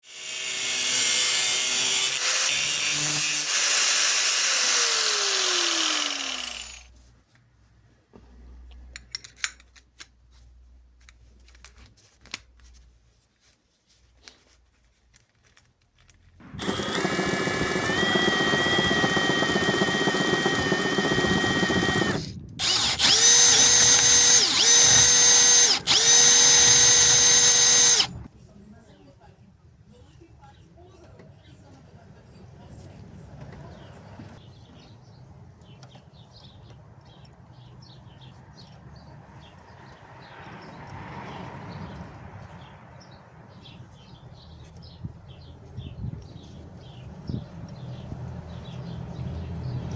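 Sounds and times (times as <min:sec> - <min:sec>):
angle drill running: 0:00.0 - 0:06.9, 0:16.4 - 0:28.2.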